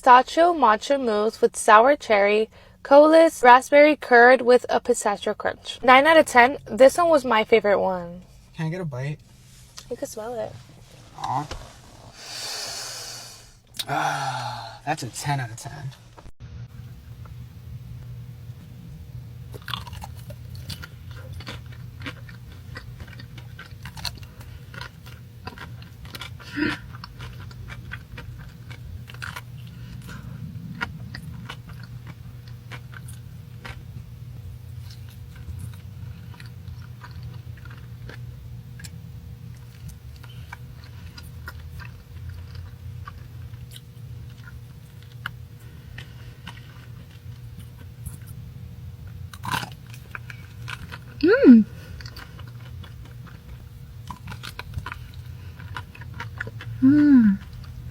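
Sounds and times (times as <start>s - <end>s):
steady low hum: 0.0s - 57.9s
crunchy chewing and bites: 19.4s - 57.9s.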